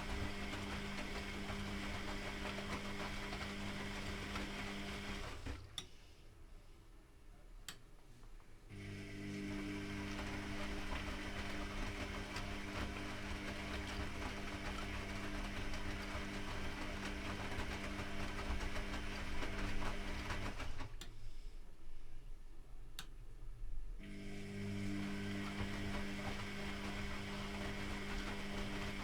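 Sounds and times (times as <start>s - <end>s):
laundry and water churning: 0.0s - 5.6s, 8.8s - 20.9s, 24.2s - 29.0s
washing machine motor hum: 0.0s - 5.7s, 8.7s - 21.0s, 24.0s - 29.0s.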